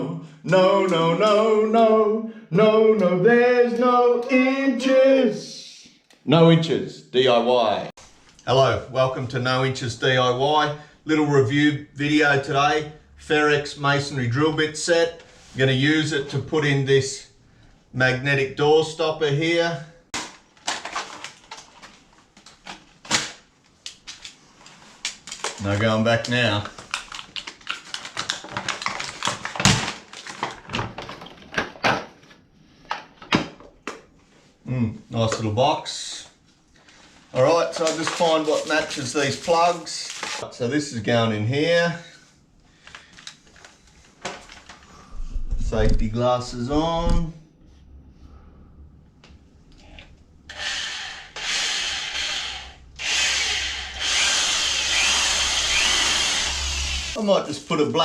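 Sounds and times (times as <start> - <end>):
packaging snapping: 20.2 - 24.4, 25.0 - 32.1
packaging crackling and clicking: 20.2 - 32.0
drill grinding into concrete: 50.5 - 57.2.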